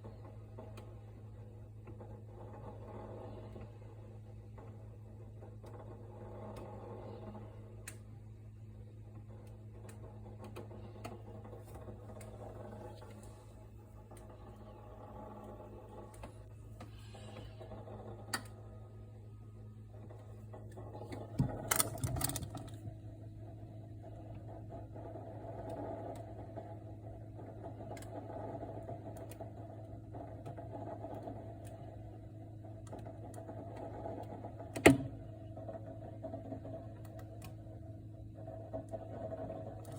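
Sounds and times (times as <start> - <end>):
refrigerator humming: 0.0 - 39.9.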